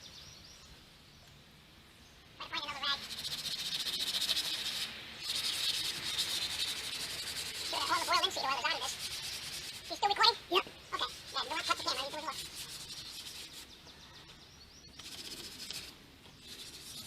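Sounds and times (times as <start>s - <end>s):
paintbrush scratching on wood: 2.4s - 13.8s, 14.9s - 17.0s
bird warbling: 2.4s - 14.2s.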